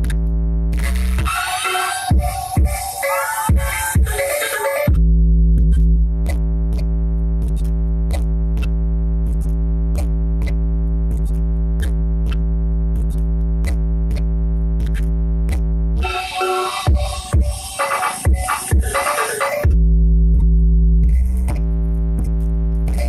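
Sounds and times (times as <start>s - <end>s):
drum-machine ticks: 0.0s - 5.0s, 5.6s - 19.8s, 20.4s - 23.0s
deep synthesizer bass note: 4.9s - 16.2s, 19.6s - 23.0s.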